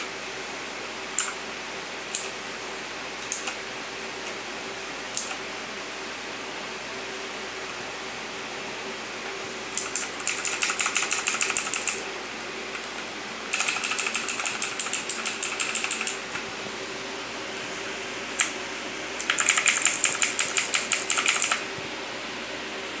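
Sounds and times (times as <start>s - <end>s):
mechanical keyboard typing: 9.8s - 12.1s, 12.7s - 16.4s, 18.4s - 18.6s, 19.2s - 21.7s.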